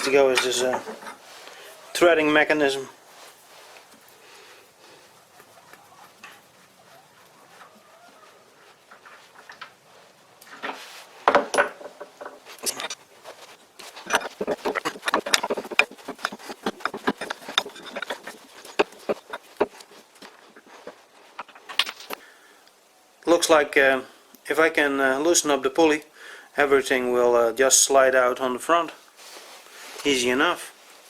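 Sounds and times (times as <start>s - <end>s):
metal parts and tools clinking: 21.4s - 22.2s.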